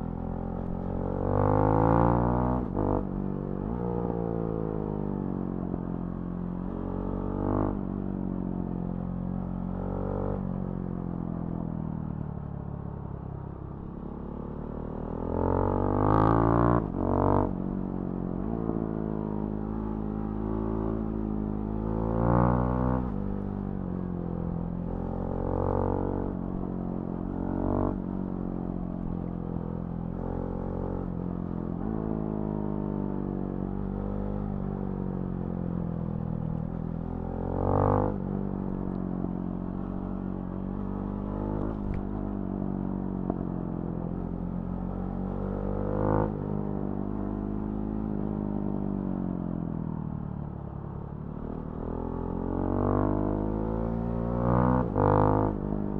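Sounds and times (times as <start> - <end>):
motorcycle engine revving: 52.1 - 55.9.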